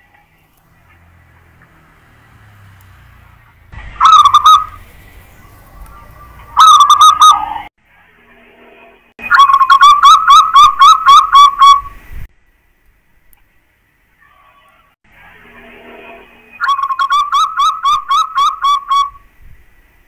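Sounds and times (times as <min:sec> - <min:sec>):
dove cooing: 0:04.0 - 0:04.8, 0:05.9 - 0:07.6.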